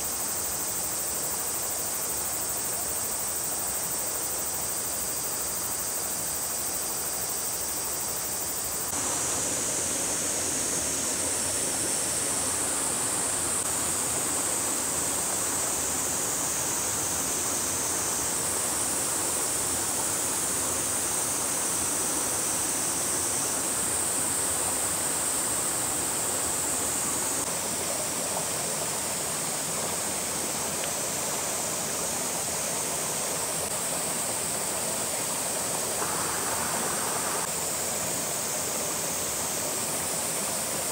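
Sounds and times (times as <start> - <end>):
flowing water rushing: 8.2 - 40.9.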